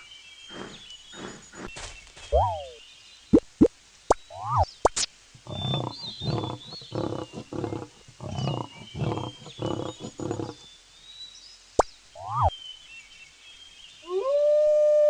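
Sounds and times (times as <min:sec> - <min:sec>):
big cat rasping grunts: 0:00.5 - 0:01.8, 0:05.4 - 0:10.6
rising and falling animal call: 0:05.4 - 0:10.6
faint high chirping: 0:05.4 - 0:10.8.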